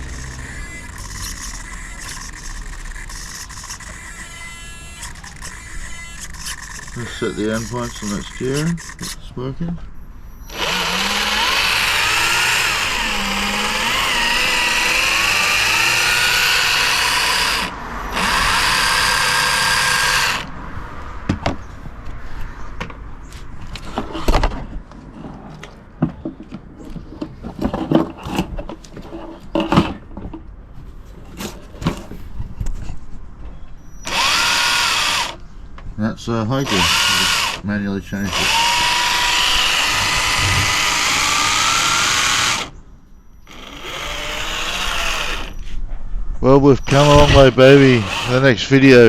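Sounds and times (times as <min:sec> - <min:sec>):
electric motor whining: 0:00.0 - 0:09.2, 0:10.4 - 0:20.5, 0:34.1 - 0:35.4, 0:36.6 - 0:37.6, 0:38.3 - 0:42.8, 0:43.5 - 0:45.7, 0:46.9 - 0:49.0.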